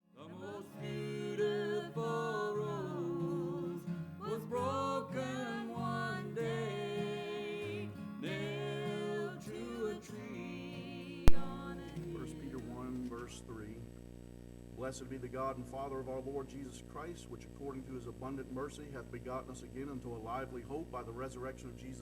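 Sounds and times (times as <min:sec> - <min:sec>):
guitar chords: 0:00.1 - 0:12.9
person singing with vibrato: 0:00.2 - 0:12.9
sharp click: 0:11.3 - 0:11.5.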